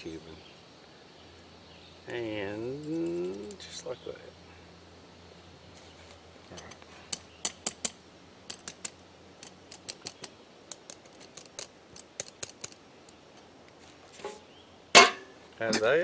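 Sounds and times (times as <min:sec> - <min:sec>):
metal rods clinking: 0:07.1 - 0:12.8, 0:15.0 - 0:15.3.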